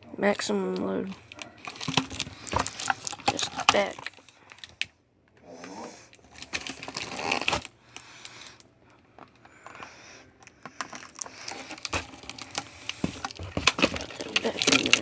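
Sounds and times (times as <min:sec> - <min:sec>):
cardboard boxes clicking and rustling: 0:00.2 - 0:04.7, 0:06.2 - 0:07.8, 0:10.4 - 0:15.0.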